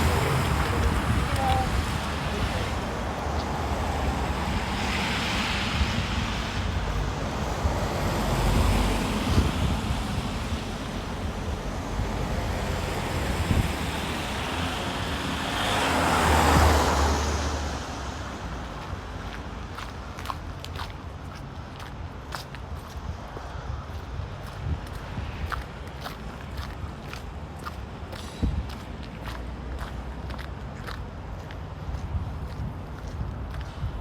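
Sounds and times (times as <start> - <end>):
vehicle passing by: 0.0 - 21.5
road traffic noise: 0.0 - 34.0
wind buffeting microphone: 0.0 - 34.0.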